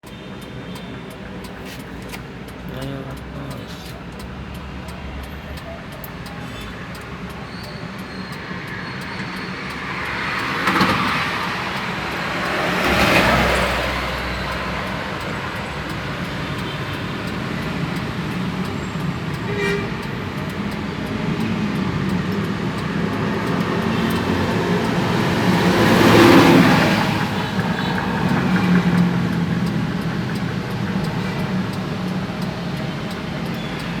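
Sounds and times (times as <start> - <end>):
vehicles passing: 0.0 - 34.0
vehicle engine running: 9.6 - 34.0.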